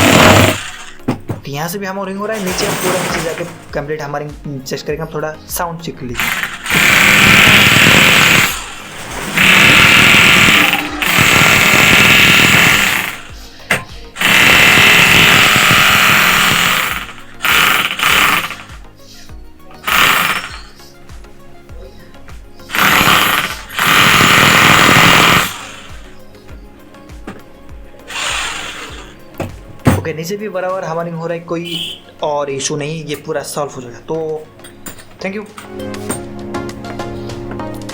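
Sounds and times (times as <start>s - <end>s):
electric demolition hammer: 0.0s - 1.4s, 2.3s - 3.8s, 6.2s - 18.8s, 19.7s - 20.8s, 22.7s - 26.2s, 28.1s - 30.0s.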